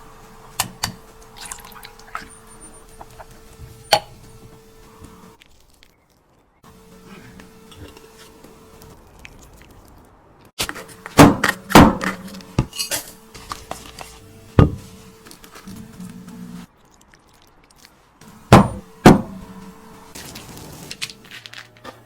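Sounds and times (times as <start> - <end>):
utensils and dishes clattering: 12.7 - 13.2.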